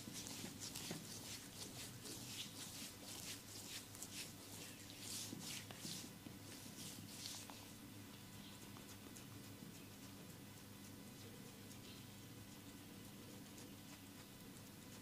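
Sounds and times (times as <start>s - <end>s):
hands rubbing skin: 0.0s - 7.7s
faint steady hum: 0.0s - 15.0s.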